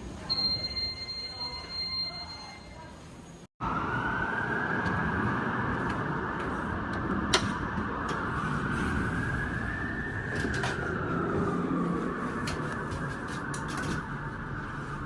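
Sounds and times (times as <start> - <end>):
elevator rushing and rumbling: 3.7 - 15.0.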